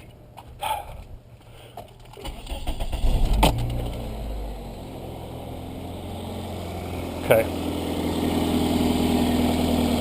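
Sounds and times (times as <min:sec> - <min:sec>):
car engine cranking and idling: 0:02.1 - 0:10.0.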